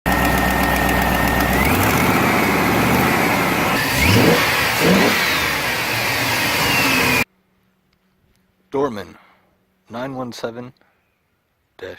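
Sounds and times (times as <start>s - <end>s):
truck engine revving: 0.1s - 7.2s.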